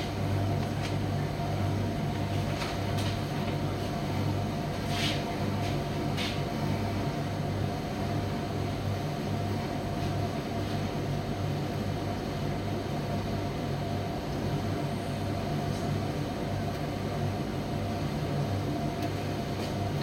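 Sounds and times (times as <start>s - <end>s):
light clicks inside dryer: 18.9s - 19.9s.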